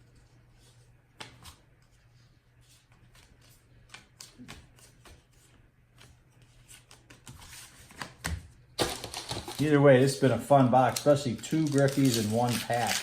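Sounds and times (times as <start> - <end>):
cards flicking and rustling: 2.8 - 10.2, 10.8 - 13.0.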